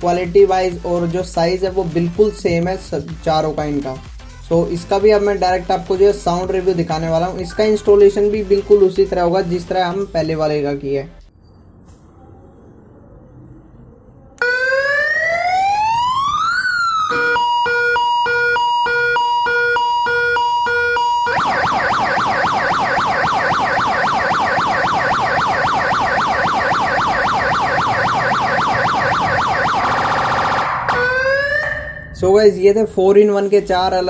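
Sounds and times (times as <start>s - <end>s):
electronic bike siren: 14.4s - 32.3s.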